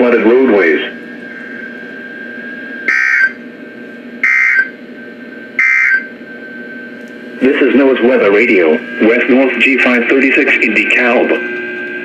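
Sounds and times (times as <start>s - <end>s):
digital data chirps: 2.8s - 3.4s, 4.2s - 4.7s, 5.6s - 6.1s.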